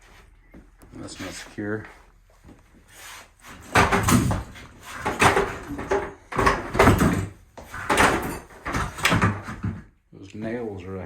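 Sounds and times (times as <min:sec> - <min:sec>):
door scraping and knocking: 0:03.4 - 0:09.9.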